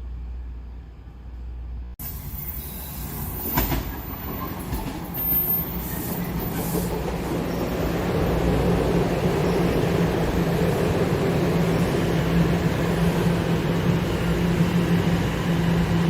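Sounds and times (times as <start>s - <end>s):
subway train rumbling: 0.0s - 16.0s
wheel squeal: 2.1s - 7.7s.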